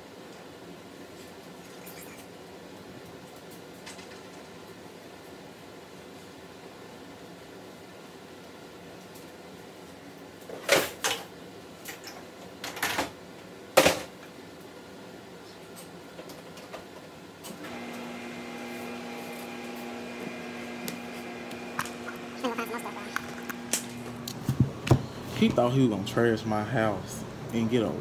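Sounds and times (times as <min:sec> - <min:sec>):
dishwasher humming: 0:17.5 - 0:28.0.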